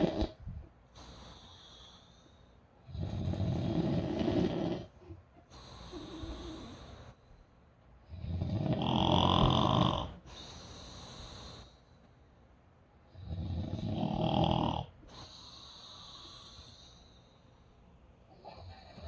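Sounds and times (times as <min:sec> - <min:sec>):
person snoring: 0:00.0 - 0:00.4, 0:02.9 - 0:04.9, 0:08.1 - 0:10.2, 0:13.2 - 0:14.9.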